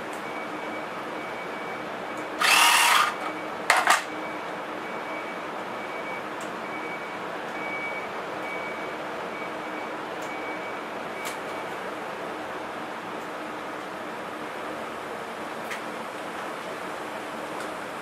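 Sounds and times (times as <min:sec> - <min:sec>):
air compressor running: 0:02.4 - 0:03.3.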